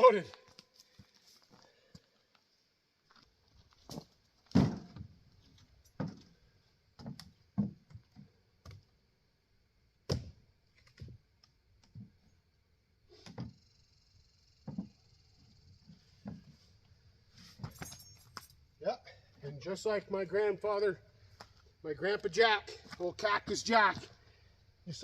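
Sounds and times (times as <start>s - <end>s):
wooden knocks and clunks: 3.8s - 6.4s, 7.0s - 8.8s, 14.6s - 15.1s, 15.9s - 16.7s.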